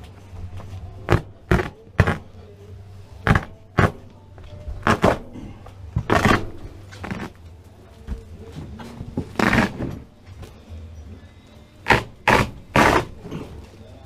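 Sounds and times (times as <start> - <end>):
carpet being ripped up: 4.8 - 5.3, 6.0 - 7.4, 9.4 - 9.9, 11.9 - 13.2
long tearing scrape: 4.8 - 5.3, 6.1 - 7.4, 9.4 - 9.9, 11.8 - 13.4.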